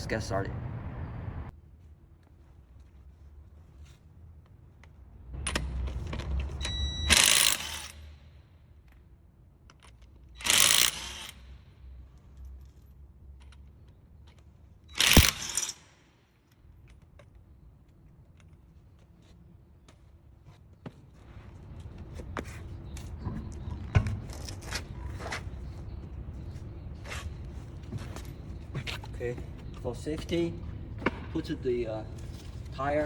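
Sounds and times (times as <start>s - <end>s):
impact wrench whine: 5.4s - 8.4s, 10.3s - 11.7s, 14.9s - 16.1s
impact wrench hammering: 7.0s - 8.1s, 10.4s - 11.4s, 15.0s - 15.8s.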